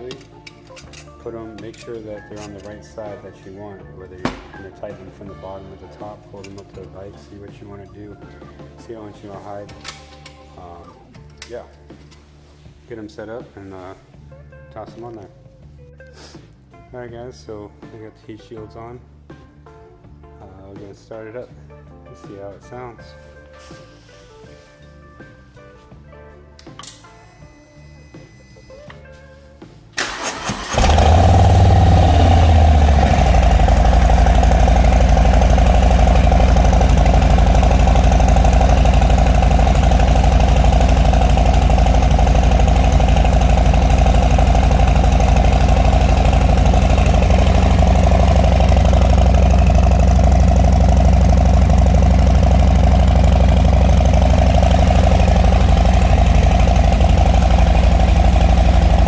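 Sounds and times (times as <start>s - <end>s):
motorcycle engine idling: 30.0s - 59.0s
starter motor cranking: 30.0s - 59.0s.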